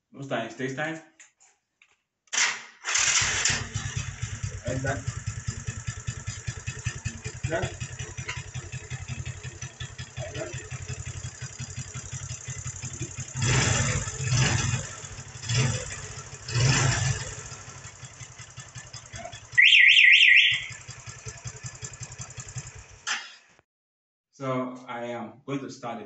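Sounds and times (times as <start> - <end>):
motorcycle engine revving: 2.9 - 23.4
electronic alarm warbling: 19.2 - 20.8.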